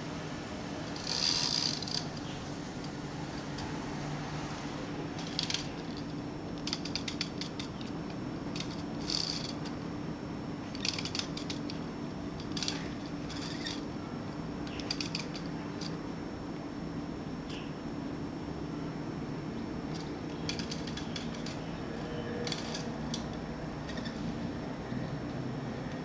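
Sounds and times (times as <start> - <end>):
toy winch ratcheting clicks: 1.0 - 2.1, 5.2 - 7.9, 8.6 - 9.7, 10.7 - 11.8, 12.4 - 13.8, 14.7 - 16.0, 19.9 - 21.6, 22.4 - 23.3.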